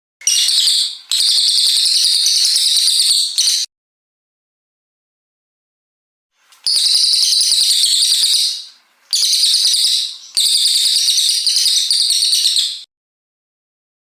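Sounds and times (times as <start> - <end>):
songbird trilling: 0.2 - 3.6, 6.5 - 12.9.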